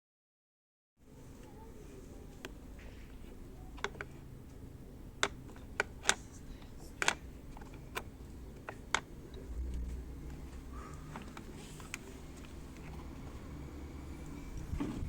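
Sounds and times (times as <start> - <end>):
sharp clicks and taps of parts: 5.2 - 9.1.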